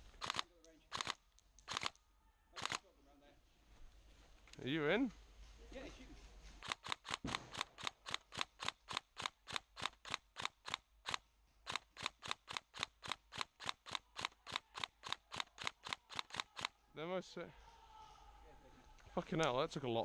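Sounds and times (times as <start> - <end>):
airsoft gun shots: 6.8 - 8.7.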